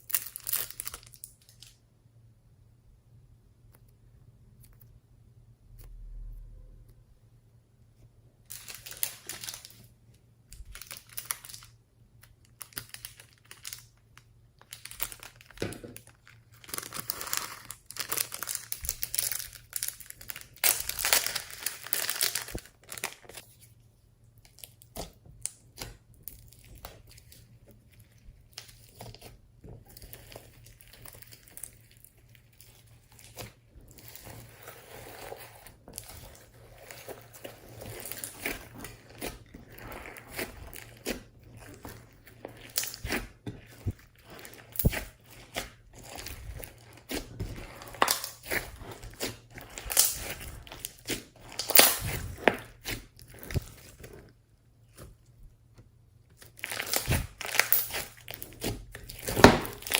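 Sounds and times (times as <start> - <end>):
slime crackling and popping: 10.5 - 23.5, 24.5 - 55.0, 56.4 - 59.9.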